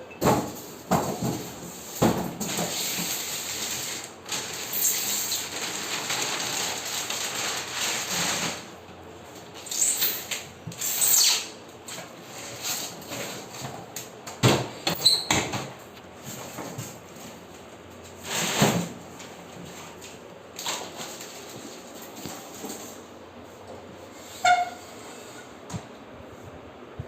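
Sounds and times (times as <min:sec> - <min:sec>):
scraping rustle of unpacking: 0:00.4 - 0:14.0, 0:16.2 - 0:23.1.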